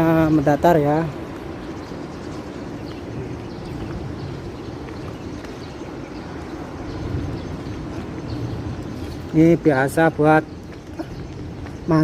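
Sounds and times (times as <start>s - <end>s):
footsteps scuffing down a slope: 1.4s - 9.4s.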